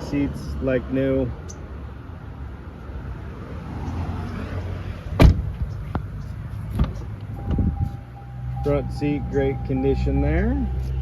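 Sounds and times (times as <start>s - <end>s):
car door shutting thud: 5.2s - 5.6s.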